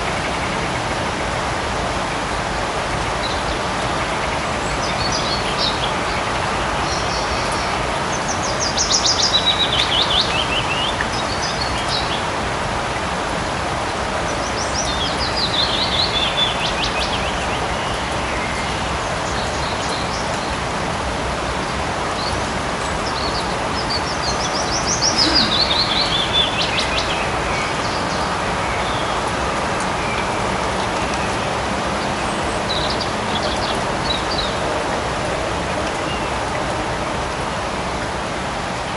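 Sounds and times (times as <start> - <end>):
light rain falling: 0.0 - 38.9
songbird trilling: 23.2 - 28.1.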